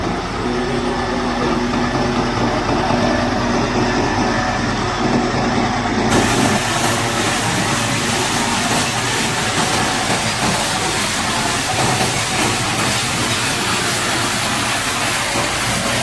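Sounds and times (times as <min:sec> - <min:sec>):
engine running: 0:00.0 - 0:16.0
high-pressure water spray hissing: 0:06.1 - 0:16.0.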